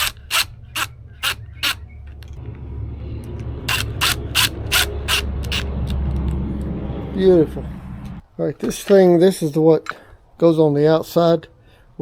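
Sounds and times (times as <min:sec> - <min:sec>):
small hardware parts rattling: 0:00.0 - 0:01.8, 0:03.7 - 0:05.6
steady low hum: 0:00.0 - 0:08.3.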